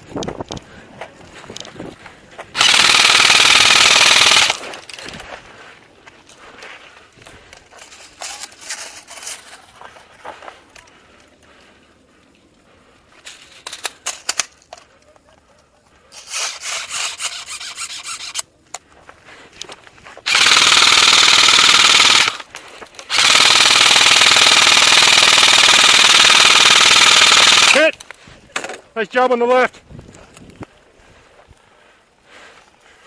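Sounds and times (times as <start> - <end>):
airsoft rifle firing full auto: 2.6 - 4.7, 20.3 - 22.5, 23.1 - 27.9.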